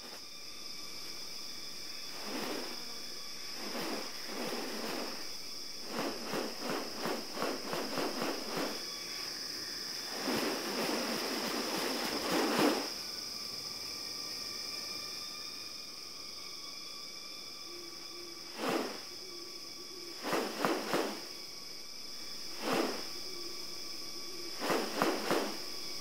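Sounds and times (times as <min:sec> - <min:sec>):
high insect drone: 0:00.0 - 0:26.0
raspy rustling bursts: 0:02.1 - 0:09.3, 0:10.0 - 0:13.0, 0:18.5 - 0:19.1, 0:20.1 - 0:21.4, 0:22.4 - 0:23.2, 0:24.5 - 0:26.0.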